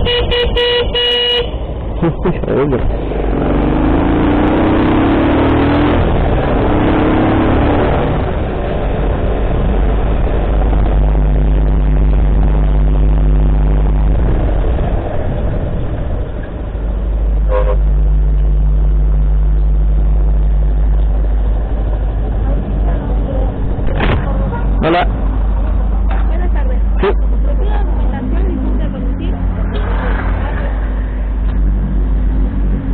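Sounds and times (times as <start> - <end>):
vehicle engine accelerating: 1.5 - 32.9
short horn toot: 17.4 - 18.0.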